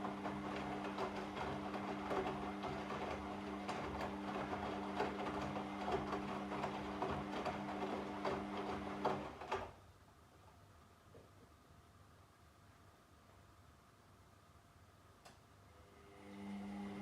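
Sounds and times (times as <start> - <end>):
washing machine running: 0.0 - 9.8.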